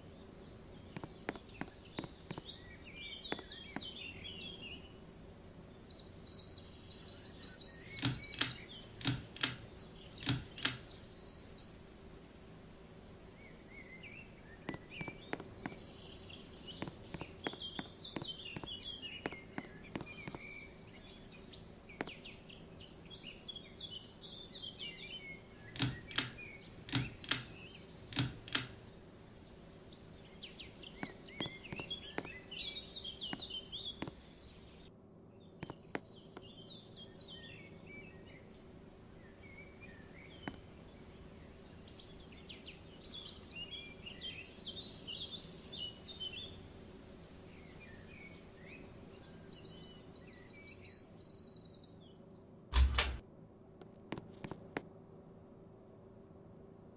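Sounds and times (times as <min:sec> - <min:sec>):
sharp clicks: 0:00.9 - 0:02.4, 0:07.9 - 0:11.0, 0:14.7 - 0:16.0, 0:16.8 - 0:20.4, 0:25.8 - 0:29.0, 0:31.0 - 0:32.3, 0:34.0 - 0:34.4, 0:52.7 - 0:53.2.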